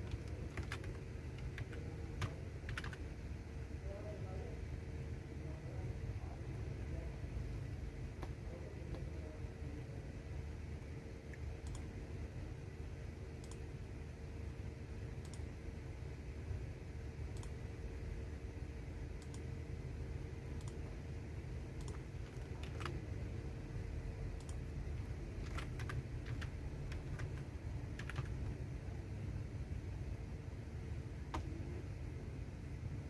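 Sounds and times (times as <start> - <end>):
keyboard typing: 0.0 - 3.0, 21.7 - 23.2, 24.3 - 28.6, 31.3 - 31.6
low background hum: 0.0 - 33.0.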